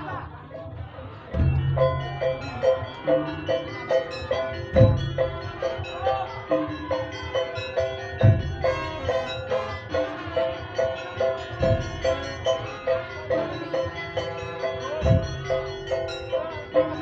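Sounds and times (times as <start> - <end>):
deep drum beats: 0.0 - 17.0
quick struck melody notes: 1.3 - 17.0.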